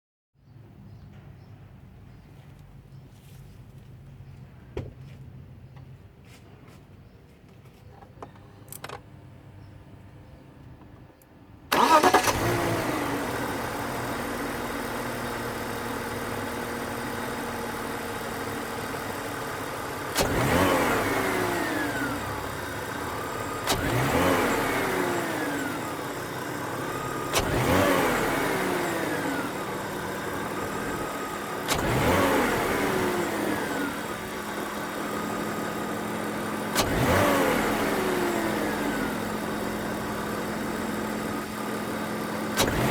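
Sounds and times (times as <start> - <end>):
engine throttle blips: 11.7 - 17.0, 18.2 - 42.9
car engine starting and idling: 11.7 - 42.9.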